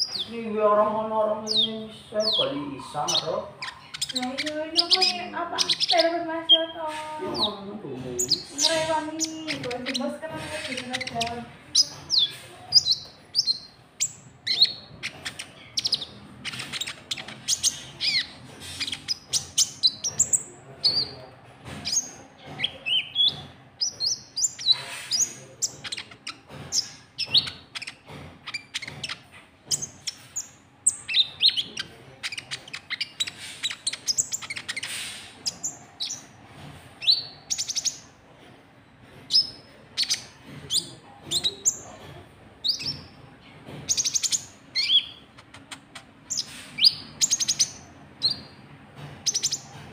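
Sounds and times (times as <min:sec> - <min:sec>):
high sharp bird chirps: 0:01.5 - 0:07.6, 0:08.2 - 0:21.2, 0:37.0 - 0:38.1, 0:42.6 - 0:43.2, 0:43.9 - 0:48.6.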